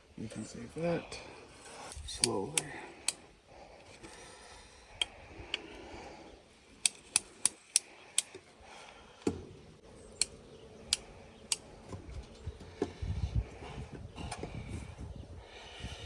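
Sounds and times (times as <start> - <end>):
metallic clicks from fence wire: 1.8 - 3.2, 6.8 - 8.4.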